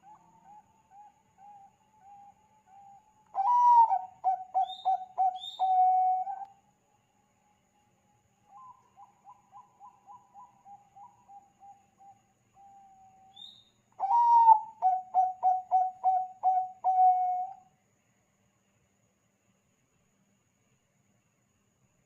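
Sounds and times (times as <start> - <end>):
dove cooing: 0.0 - 6.4, 14.0 - 17.6.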